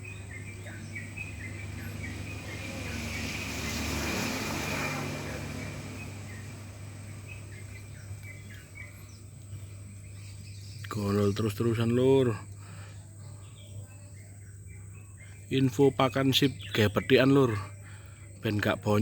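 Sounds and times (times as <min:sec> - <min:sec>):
broad rushing noise: 0:00.0 - 0:09.0
small birds chirping: 0:00.0 - 0:19.0.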